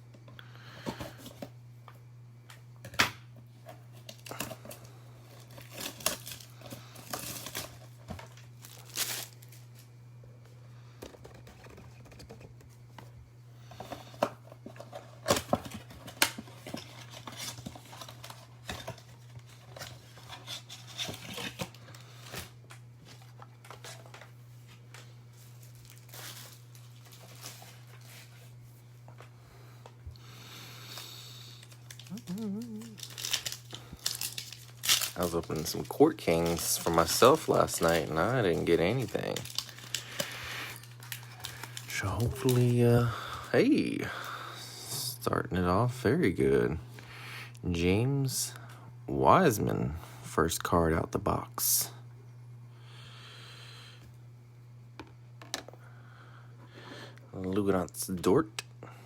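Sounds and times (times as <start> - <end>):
low electrical hum: 0.0 - 59.0
plastic wrapping tearing and crinkling: 4.0 - 9.8, 14.9 - 22.6, 25.4 - 28.3, 31.5 - 43.0.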